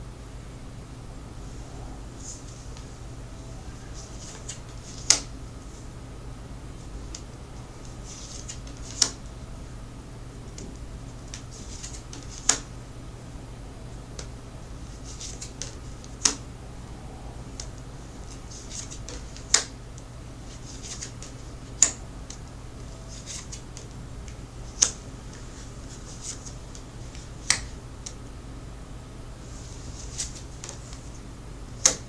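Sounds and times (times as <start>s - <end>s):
low steady hum: 0.0s - 32.0s
cards rustling and sliding: 3.6s - 5.3s, 7.8s - 9.2s, 11.2s - 12.7s, 14.9s - 16.4s, 17.6s - 19.8s, 20.5s - 22.4s, 23.1s - 24.0s, 24.7s - 27.7s, 29.4s - 31.1s
cards clicking on a table: 8.1s - 9.2s, 11.3s - 12.7s, 18.7s - 19.7s, 20.5s - 22.0s, 23.1s - 27.8s, 31.8s - 32.0s.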